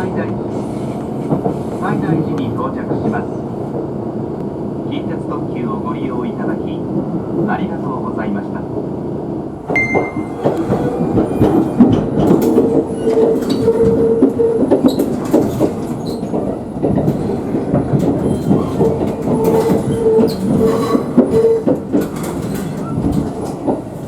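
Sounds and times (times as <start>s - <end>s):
train clicking over rail joints: 0.2s - 4.5s, 9.6s - 24.0s
train wheels squealing: 18.2s - 23.1s.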